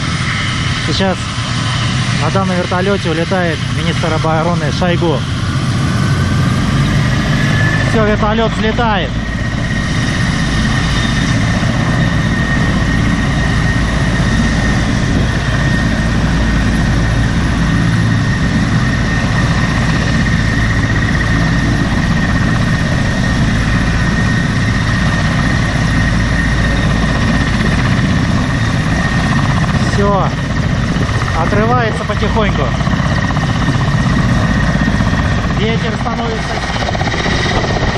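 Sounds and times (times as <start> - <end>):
helicopter rotor rush: 0.0 - 37.9
high turbine whine: 0.0 - 37.9.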